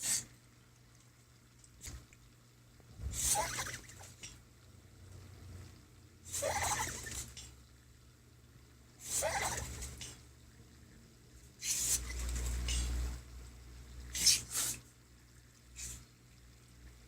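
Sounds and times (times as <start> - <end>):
dog sneezing: 6.3 - 7.1, 9.0 - 10.1, 11.6 - 12.1, 14.1 - 14.8.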